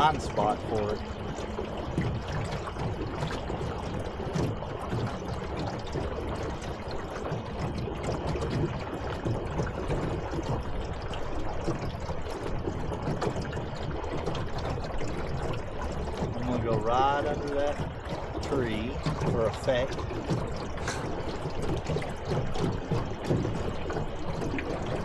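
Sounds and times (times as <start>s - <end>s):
water sloshing against boat hull: 0.0s - 25.0s.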